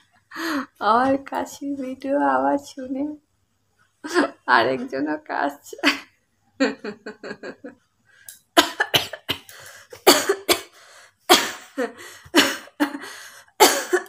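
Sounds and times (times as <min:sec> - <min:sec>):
person coughing harshly: 0:08.6 - 0:13.0, 0:13.6 - 0:14.0.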